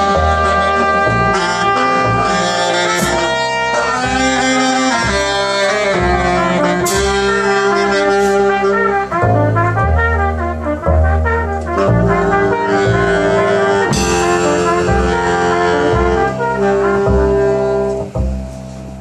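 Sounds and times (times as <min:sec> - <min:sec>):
jazz quartet playing: 0:00.0 - 0:19.0
cymbal crash: 0:13.9 - 0:15.2.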